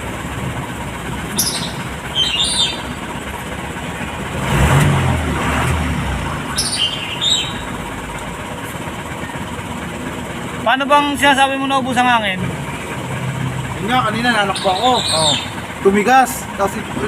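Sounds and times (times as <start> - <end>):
birds chirping: 0.0 - 4.5, 6.0 - 10.3, 12.6 - 17.0
outdoor background noise: 0.0 - 17.0.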